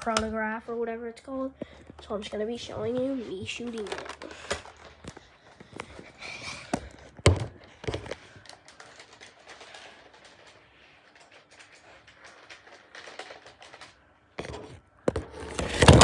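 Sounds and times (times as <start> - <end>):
toy blaster plastic clicks and rattles: 3.3 - 14.5.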